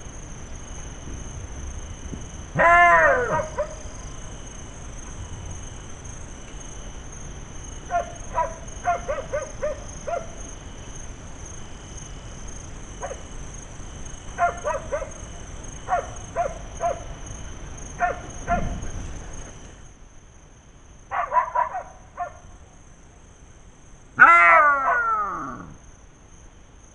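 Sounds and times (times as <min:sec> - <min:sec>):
jackals yelping: 0:02.6 - 0:03.8, 0:24.2 - 0:25.8.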